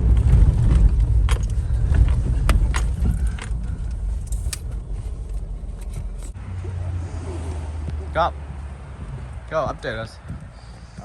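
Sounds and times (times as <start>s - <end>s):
sharp clicks and rattles: 0.0s - 6.4s
car rumble on the move: 0.0s - 11.0s.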